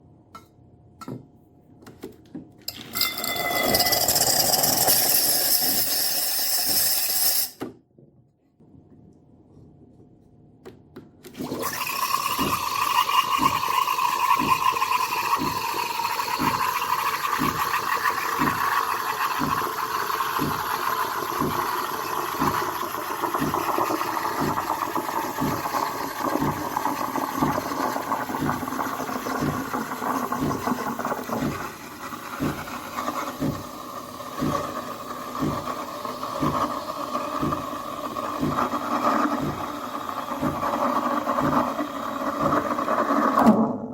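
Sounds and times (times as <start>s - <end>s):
low pulsing pump: 12.1s - 43.5s.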